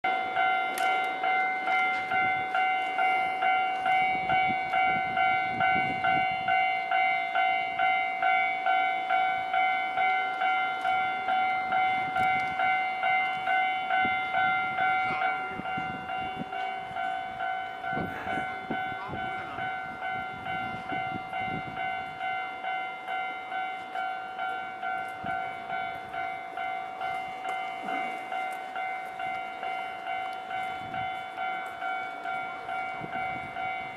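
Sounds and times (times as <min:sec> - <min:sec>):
level crossing bell ringing: 0:00.0 - 0:33.9
train rumble: 0:00.1 - 0:33.9.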